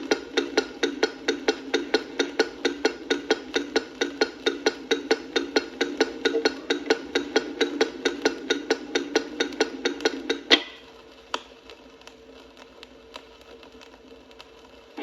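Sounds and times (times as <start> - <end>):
turn signal flasher ticking: 0.0 - 11.5
faint steady hum: 0.0 - 15.0.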